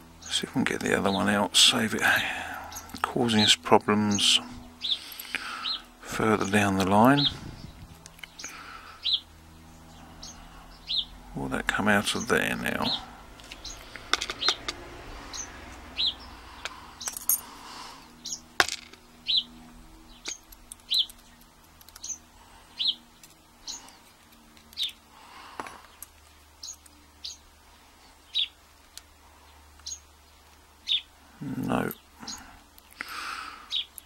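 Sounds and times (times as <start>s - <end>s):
bird chirping: 2.4s - 3.0s, 4.1s - 17.2s, 17.8s - 18.5s, 19.1s - 25.1s, 25.8s - 27.5s, 28.2s - 28.6s, 29.4s - 34.0s.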